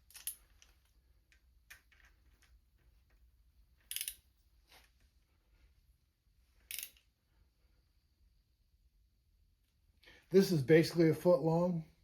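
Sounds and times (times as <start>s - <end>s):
socket wrench ratchet clicking: 3.9s - 4.2s, 6.7s - 7.0s.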